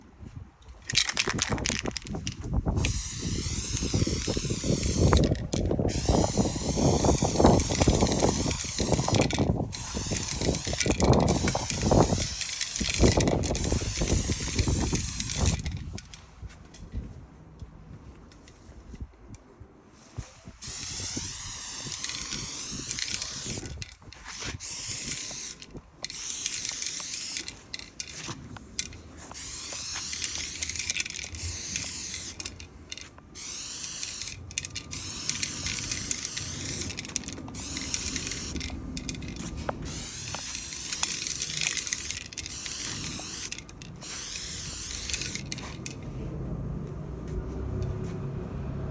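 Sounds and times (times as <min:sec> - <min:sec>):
spray gun hissing bursts: 0:02.9 - 0:05.2, 0:05.9 - 0:15.4, 0:20.6 - 0:23.6, 0:24.6 - 0:25.6, 0:26.2 - 0:27.5, 0:29.4 - 0:32.4, 0:33.4 - 0:37.0, 0:37.6 - 0:38.6, 0:39.4 - 0:45.5.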